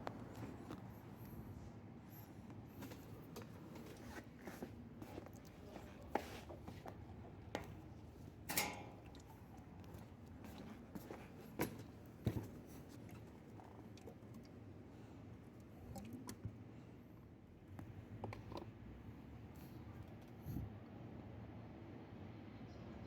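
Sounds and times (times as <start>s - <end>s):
hand tools clinking on metal: 8.5s - 9.0s.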